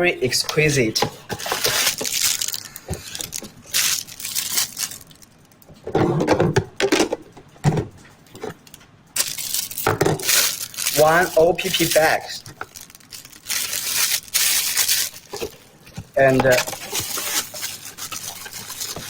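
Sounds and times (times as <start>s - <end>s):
plastic and paper crinkling: 0.4s - 5.6s, 9.2s - 19.0s.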